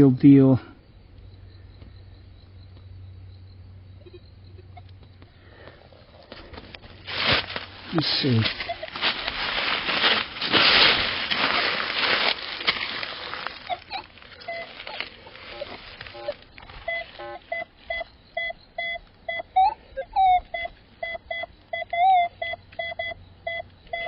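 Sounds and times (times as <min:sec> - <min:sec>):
metal detector beeps: 0:04.0 - 0:05.1, 0:07.9 - 0:10.2, 0:13.7 - 0:24.0
rustling scraping noise: 0:05.9 - 0:17.9.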